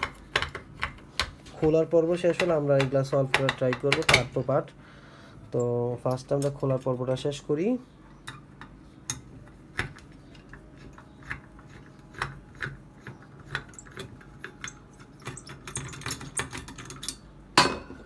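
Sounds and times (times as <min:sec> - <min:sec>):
small metal clicks and scrapes: 0:08.2 - 0:17.3.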